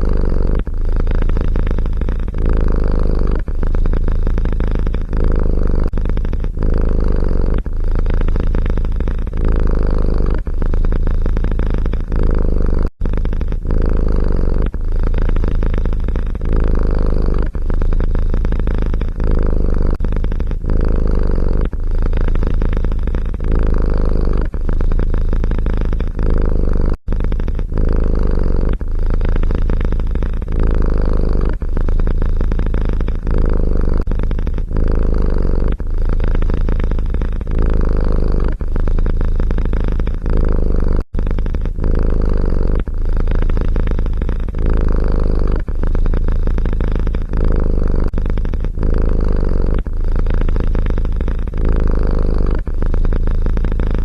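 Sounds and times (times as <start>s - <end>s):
cat purring: 0.0s - 54.0s.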